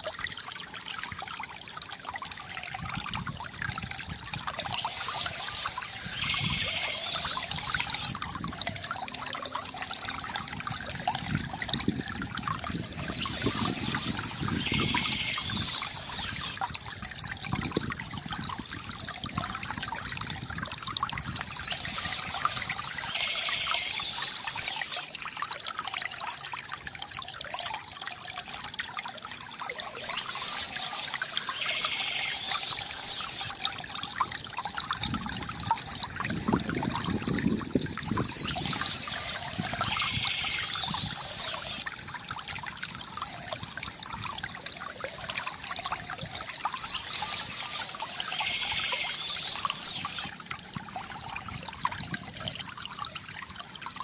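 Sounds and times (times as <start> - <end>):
stream trickling and splashing: 0.0 - 54.0
deep water gurgle: 1.9 - 27.2, 29.3 - 53.2
birds singing: 4.5 - 8.2, 12.8 - 16.6, 21.4 - 25.1, 29.8 - 33.7, 38.1 - 41.8, 46.4 - 50.3.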